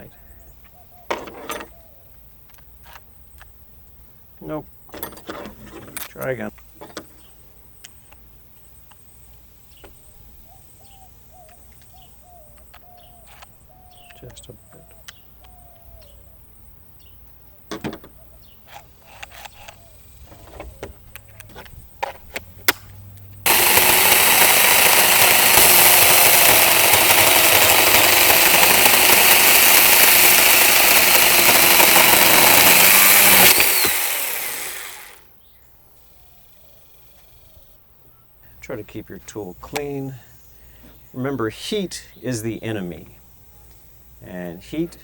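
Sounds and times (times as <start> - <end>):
mini chainsaw running: 23.4 - 35.2.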